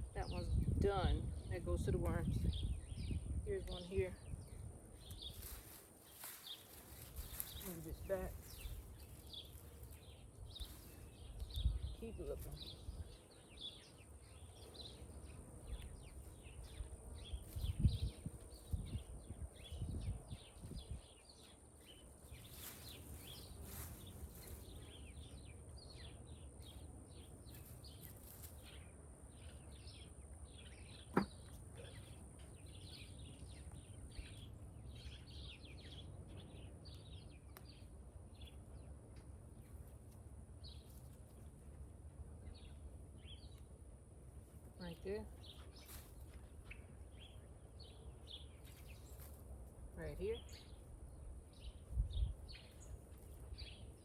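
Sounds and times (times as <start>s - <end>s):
small birds chirping: 0.0s - 54.0s
rustling: 5.0s - 11.6s, 22.1s - 25.1s, 27.4s - 28.8s.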